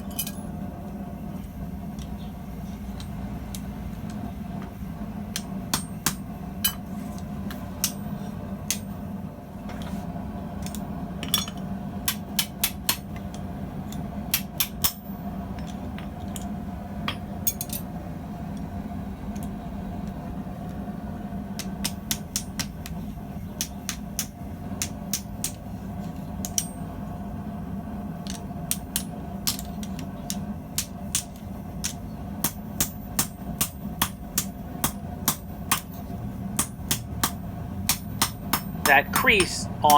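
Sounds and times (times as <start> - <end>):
steady low hum: 0.0 - 39.9
hammer striking hot steel: 2.9 - 9.1, 10.6 - 16.5, 21.5 - 25.7, 26.4 - 27.0, 28.3 - 39.9.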